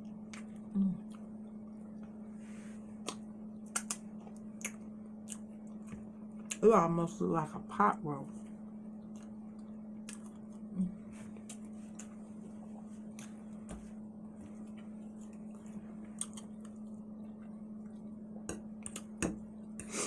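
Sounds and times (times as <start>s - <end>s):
steady low hum: 0.0s - 20.0s
person chewing food: 2.9s - 6.6s, 9.0s - 20.0s.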